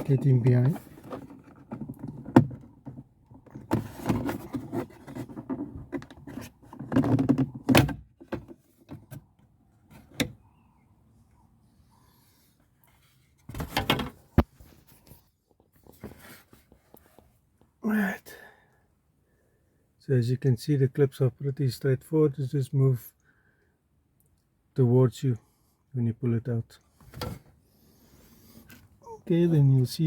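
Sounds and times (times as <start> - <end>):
plastic trim rubbing and scraping: 0.0 - 7.7.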